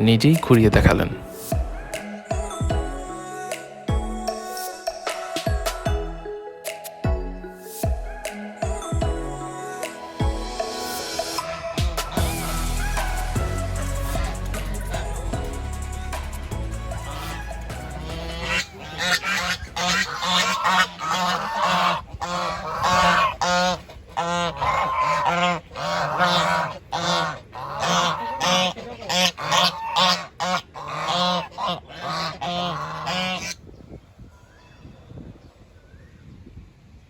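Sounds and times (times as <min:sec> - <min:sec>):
farm fowl honking: 0:11.4 - 0:15.6, 0:16.7 - 0:33.6.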